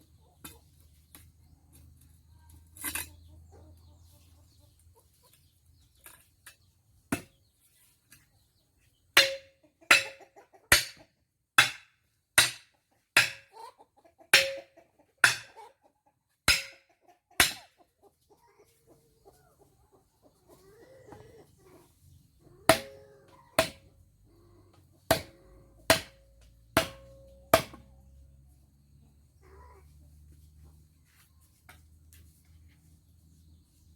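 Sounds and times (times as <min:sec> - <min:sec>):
chickens clucking faintly: 0:00.0 - 0:11.4, 0:12.7 - 0:25.9, 0:26.5 - 0:33.9
sharp ringing metal strikes: 0:09.2 - 0:10.1, 0:14.4 - 0:15.4, 0:25.9 - 0:27.8.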